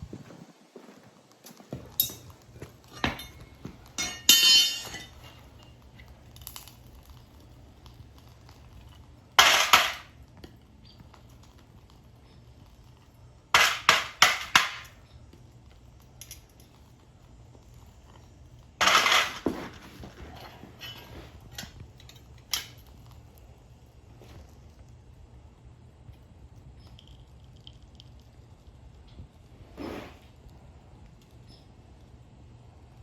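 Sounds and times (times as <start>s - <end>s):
low steady hum: 0.0s - 33.0s
metal clinking and clanging: 1.5s - 6.8s, 16.2s - 16.8s, 18.8s - 23.2s
metal rattle: 18.8s - 22.8s.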